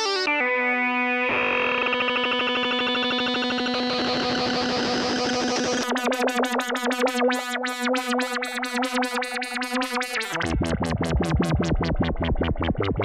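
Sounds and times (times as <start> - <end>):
synthesizer note sequence: 8.0 - 13.0
synth bass line: 10.3 - 13.0.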